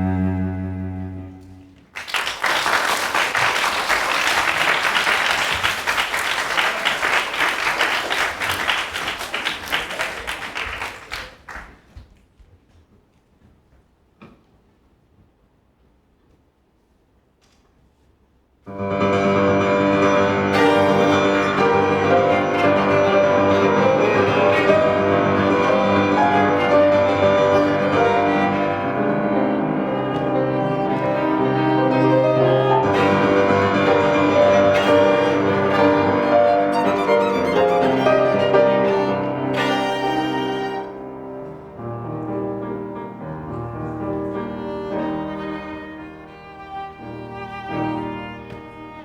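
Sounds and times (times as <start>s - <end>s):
bowed strings: 0.0s - 1.9s, 18.7s - 49.0s
piano: 0.0s - 11.0s, 18.7s - 49.0s.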